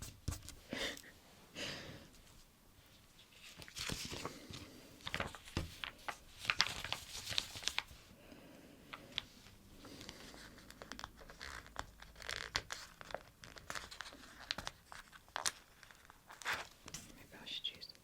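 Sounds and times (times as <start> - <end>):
paper crinkling: 3.2 - 8.1, 9.0 - 17.2.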